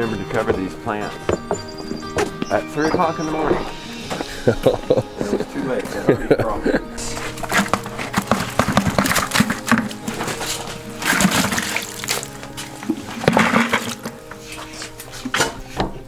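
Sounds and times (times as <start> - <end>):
background music with held tones: 0.0 - 16.0
rustling and scraping: 0.0 - 16.0.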